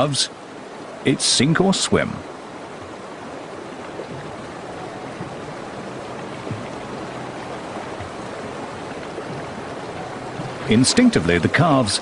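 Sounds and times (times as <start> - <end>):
river water rushing: 0.0 - 12.0
faint low knocks: 2.6 - 11.6.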